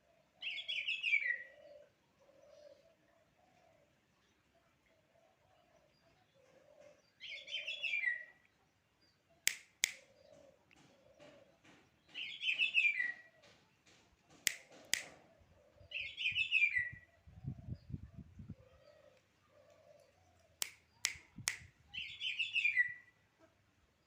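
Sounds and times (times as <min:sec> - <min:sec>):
sharp clicks: 0:09.5 - 0:10.1, 0:14.3 - 0:15.2, 0:20.4 - 0:21.7.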